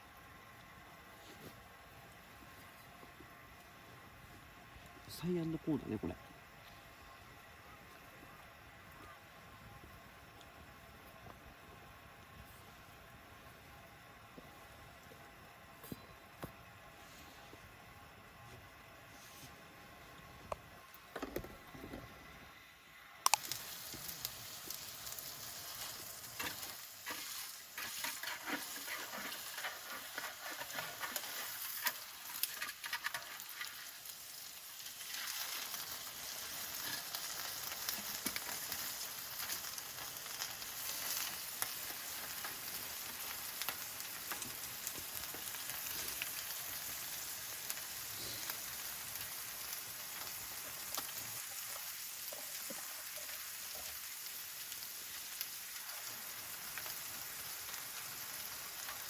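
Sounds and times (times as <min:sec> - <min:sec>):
food sizzling in a hot pan: 0:23.2 - 0:59.0.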